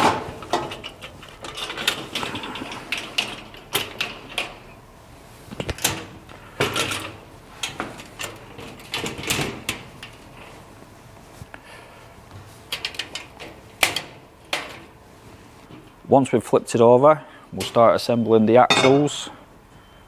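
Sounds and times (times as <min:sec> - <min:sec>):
cart panels clicking and rattling: 0:00.0 - 0:04.6, 0:05.6 - 0:10.5, 0:12.7 - 0:14.9.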